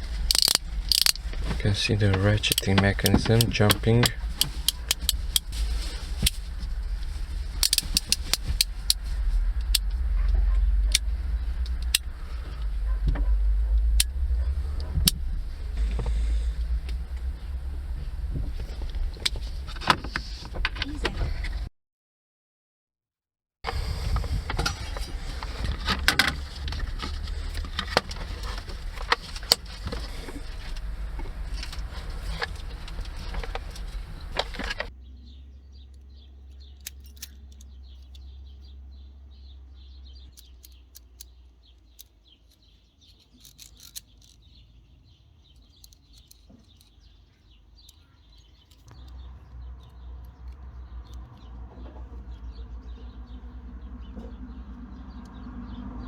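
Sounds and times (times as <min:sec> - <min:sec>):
steady low hum: 0:00.0 - 0:21.7, 0:23.7 - 0:42.4
ratchet clicks and rattles: 0:00.2 - 0:01.4, 0:07.6 - 0:09.9, 0:36.0 - 0:38.6, 0:40.3 - 0:44.6, 0:45.5 - 0:47.2, 0:47.8 - 0:51.5.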